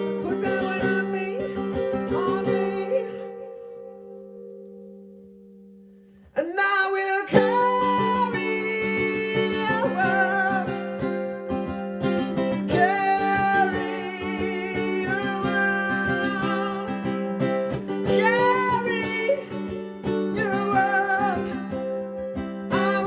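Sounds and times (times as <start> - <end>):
person singing: 0.0 - 4.8, 6.4 - 23.0
ukulele strumming: 0.0 - 23.0.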